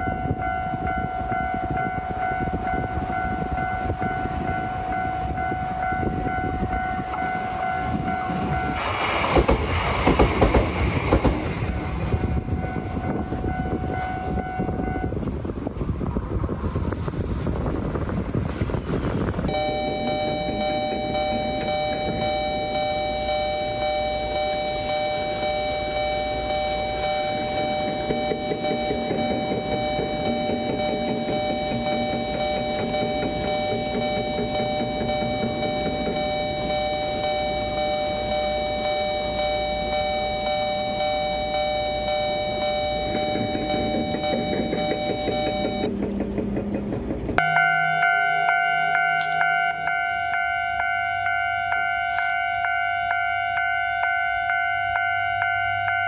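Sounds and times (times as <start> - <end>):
passing train rumble: 0.0 - 56.0
level crossing bell ringing: 19.5 - 45.9, 47.4 - 56.0.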